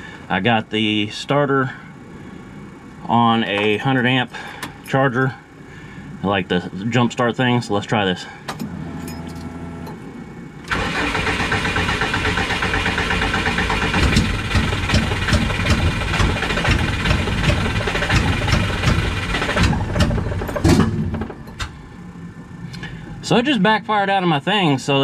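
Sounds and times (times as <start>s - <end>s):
engine cranking on starter: 10.6s - 21.8s
engine backfire: 10.7s - 21.9s.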